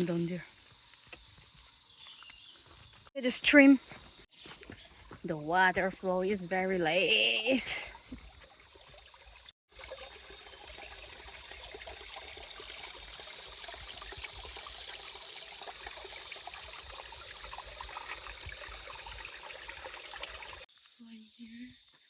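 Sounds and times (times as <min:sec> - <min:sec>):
stream trickling over stones: 0:00.0 - 0:01.0, 0:04.5 - 0:20.9.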